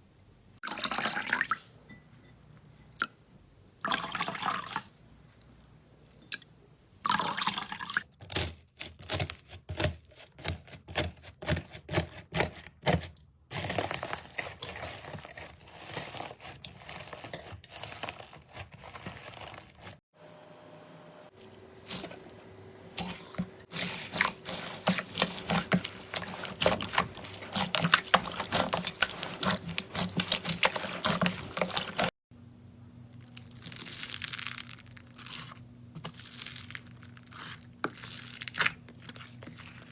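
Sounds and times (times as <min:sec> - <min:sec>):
crunchy slime crackling: 0:23.0 - 0:32.1, 0:33.2 - 0:39.9
slime squelching and popping: 0:23.0 - 0:32.1, 0:33.3 - 0:39.9.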